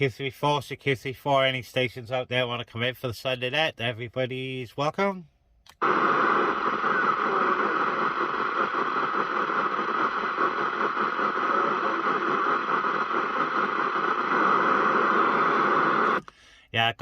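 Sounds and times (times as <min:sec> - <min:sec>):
radio static hiss: 0:05.8 - 0:16.3.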